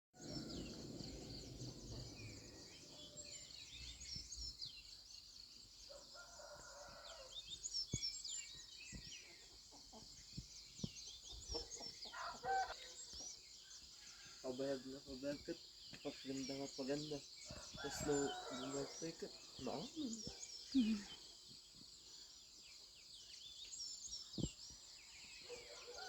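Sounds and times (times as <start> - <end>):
small birds chirping: 0.2 - 26.0
rooster crowing: 12.1 - 12.8, 17.6 - 19.1.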